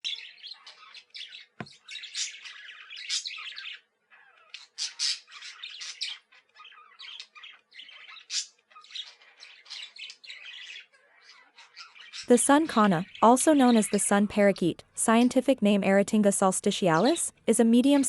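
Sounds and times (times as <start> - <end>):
parrots screeching: 0.1 - 12.3.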